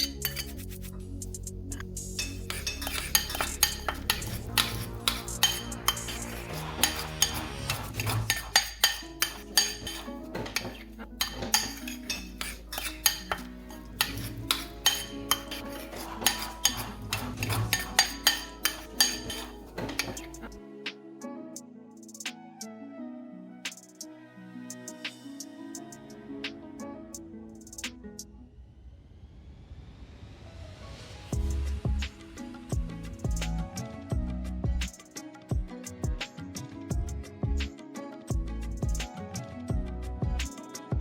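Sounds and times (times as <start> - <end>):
utensil scraping a bowl: 0.0 - 0.9, 2.1 - 20.6
background music: 0.0 - 29.1, 30.3 - 41.0.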